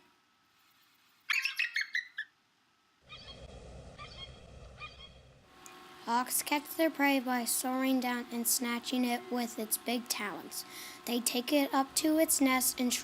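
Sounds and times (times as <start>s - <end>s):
high chirping bird calls: 1.3s - 2.3s, 3.1s - 5.3s.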